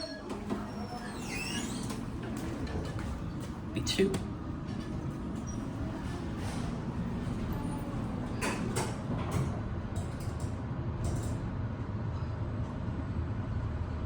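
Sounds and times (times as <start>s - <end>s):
elevator humming: 0.0s - 11.6s
elevator door mechanism clicks: 4.2s - 11.5s.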